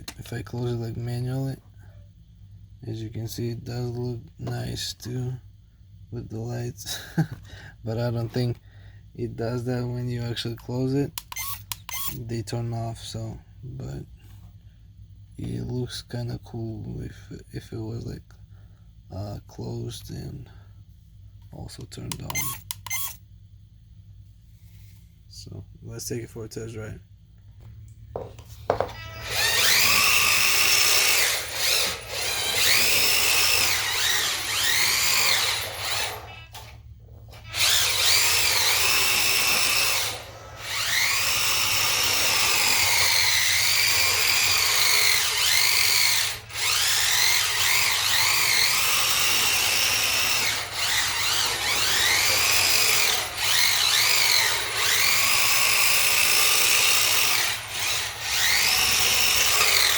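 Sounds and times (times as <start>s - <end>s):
electric motor whining: 11.2s - 12.2s, 22.1s - 23.2s, 28.2s - 36.7s, 37.3s - 59.9s.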